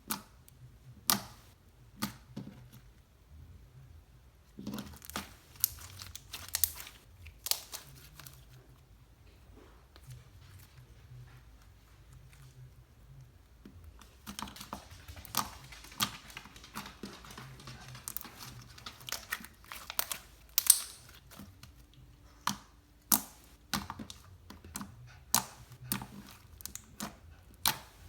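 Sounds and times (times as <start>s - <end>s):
slime clicking and popping: 5.0s - 8.1s, 14.4s - 21.4s, 22.4s - 24.2s.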